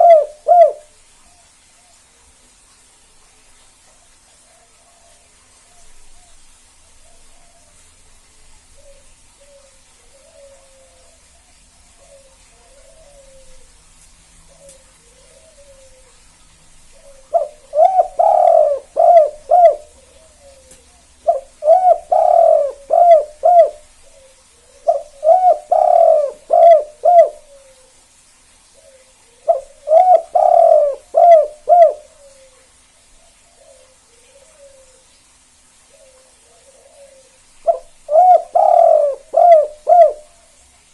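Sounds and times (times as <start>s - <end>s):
dove cooing: 0.0s - 1.4s, 8.8s - 13.8s, 14.5s - 16.2s, 16.9s - 28.0s, 28.7s - 35.1s, 35.9s - 40.5s
faint soft coos: 8.8s - 13.7s, 14.5s - 16.2s, 28.8s - 35.1s, 35.9s - 40.5s.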